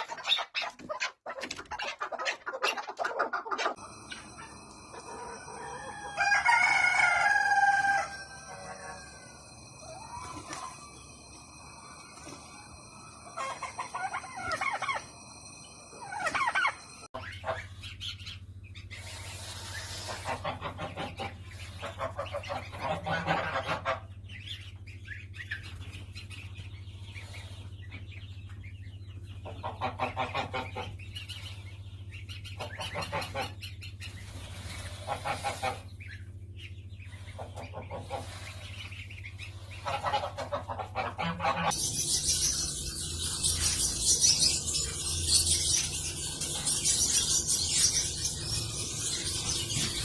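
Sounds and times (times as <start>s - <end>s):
steady low hum: 3.4s - 50.0s
rapid high-pitched bird chirping: 9.4s - 50.0s
goose honking: 19.9s - 24.1s, 32.6s - 33.6s, 34.9s - 36.0s, 39.6s - 41.8s.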